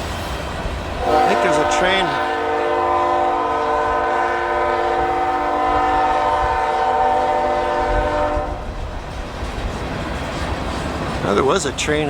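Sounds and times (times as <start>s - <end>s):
train rumbling: 0.0s - 12.0s
locomotive air horn blast: 1.0s - 8.7s.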